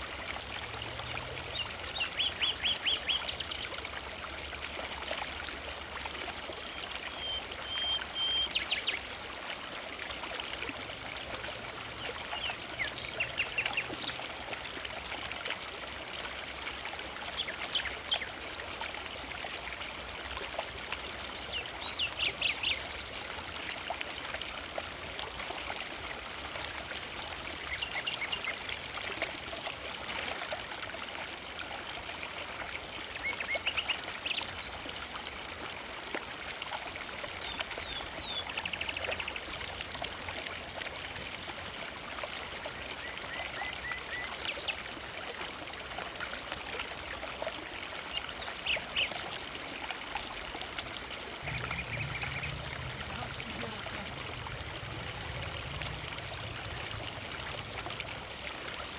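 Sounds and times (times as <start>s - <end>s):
river water rushing: 46.5s - 58.9s.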